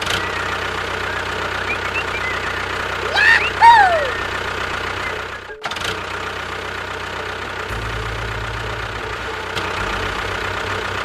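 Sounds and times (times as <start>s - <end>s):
small engine humming: 0.0s - 11.0s.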